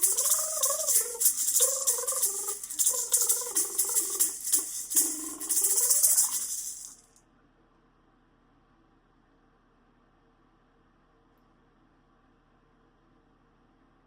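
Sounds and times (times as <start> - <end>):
hissing shaker rattle: 0.0 - 7.2.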